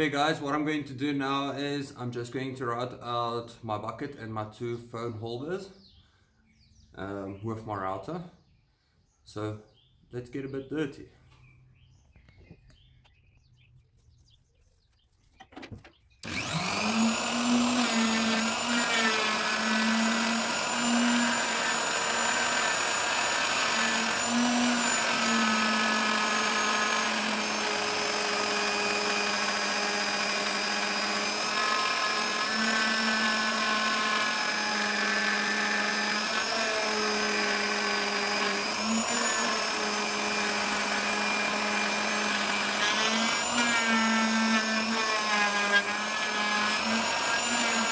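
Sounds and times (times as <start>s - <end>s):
electric router whining while cutting wood: 16.2s - 47.9s.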